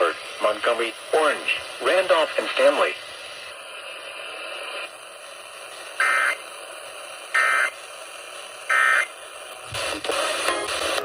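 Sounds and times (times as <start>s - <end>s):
radio hiss: 0.0s - 11.0s
warbling digital data tones: 7.4s - 7.8s, 8.7s - 9.1s.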